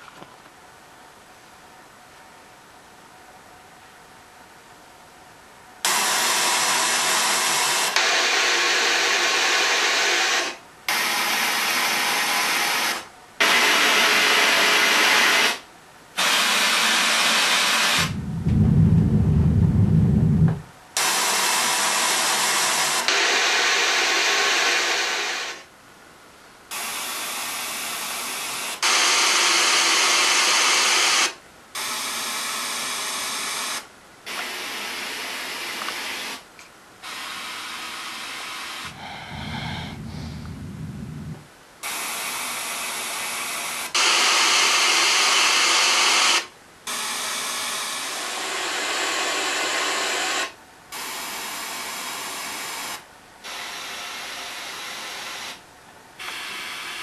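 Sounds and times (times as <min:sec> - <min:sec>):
loud hissing noises: 0:16.2 - 0:25.7, 0:38.4 - 0:44.0
deep rumble: 0:18.0 - 0:20.7, 0:38.9 - 0:41.5.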